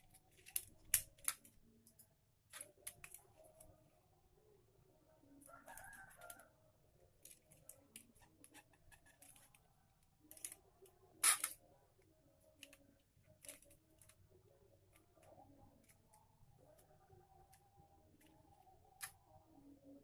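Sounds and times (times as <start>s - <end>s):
rooster crowing: 5.4s - 6.6s.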